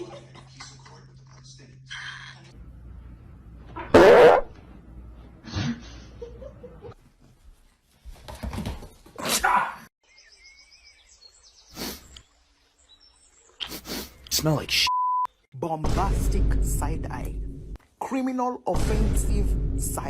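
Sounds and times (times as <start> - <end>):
dog barking: 3.8 - 4.6.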